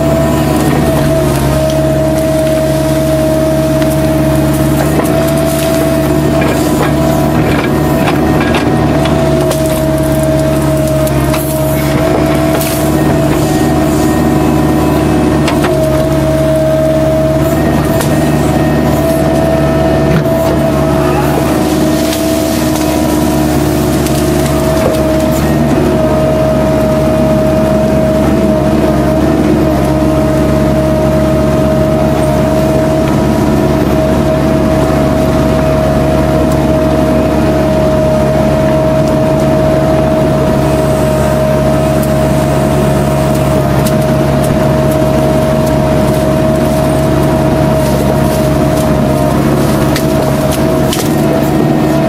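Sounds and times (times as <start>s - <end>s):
constant whine: 0.0s - 52.0s
excavator diesel engine running: 0.0s - 52.0s
steady high tone: 19.7s - 23.8s.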